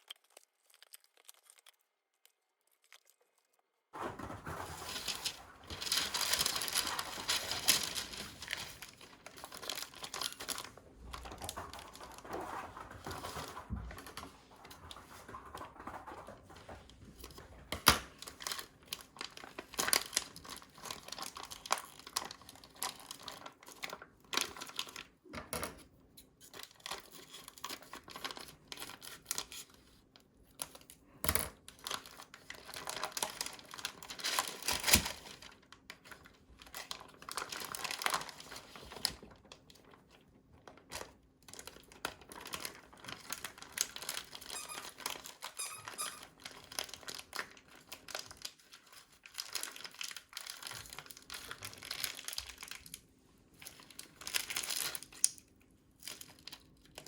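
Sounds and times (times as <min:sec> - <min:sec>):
plastic packaging crinkling and tearing: 0:00.0 - 0:25.3, 0:26.3 - 0:57.0
squeaks: 0:44.5 - 0:46.3.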